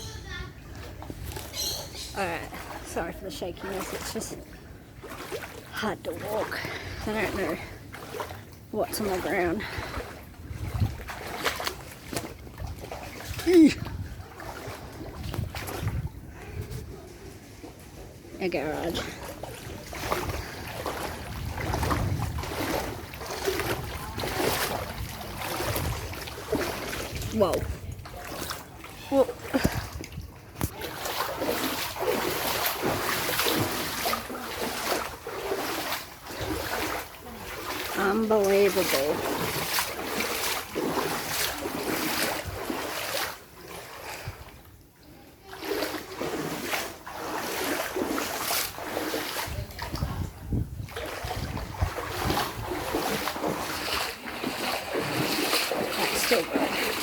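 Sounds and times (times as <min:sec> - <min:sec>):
floodwater rushing: 0:00.3 - 0:57.0
footsteps splashing through water: 0:00.6 - 0:57.0
wind buffeting microphone: 0:09.3 - 0:17.9, 0:18.6 - 0:33.9, 0:49.3 - 0:57.0.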